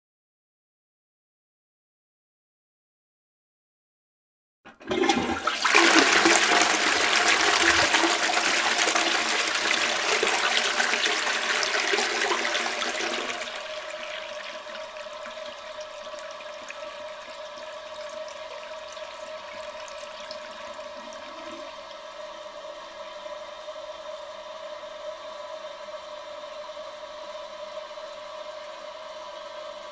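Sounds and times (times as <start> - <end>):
toilet flushing: 4.7 - 23.1
cistern refilling with whine: 4.7 - 27.8.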